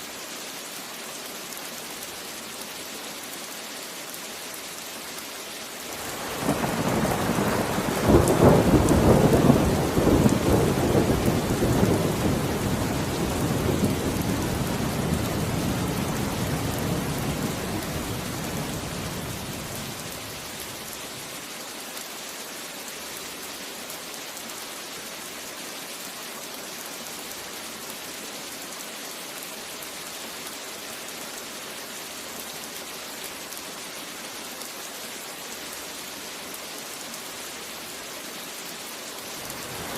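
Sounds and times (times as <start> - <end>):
steady rain: 0.0 - 39.9
rolling thunder: 6.3 - 20.2.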